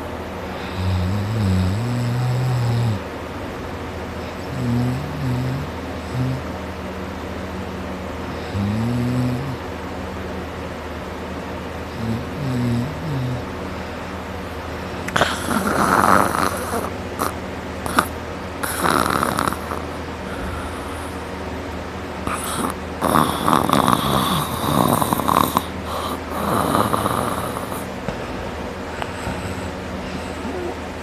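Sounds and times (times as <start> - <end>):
person snoring loudly: 0.5 - 3.1, 4.2 - 6.6, 8.3 - 9.6, 11.9 - 13.5, 15.0 - 21.3, 22.2 - 27.9, 29.0 - 31.0.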